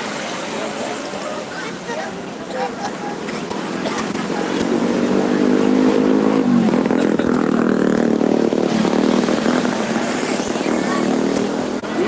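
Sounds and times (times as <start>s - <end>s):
vehicle engine passing: 2.5s - 12.0s.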